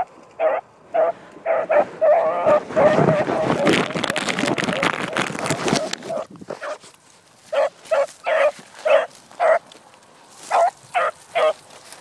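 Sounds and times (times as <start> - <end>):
dog barking: 0.4 - 3.0, 7.5 - 9.6, 10.5 - 11.6.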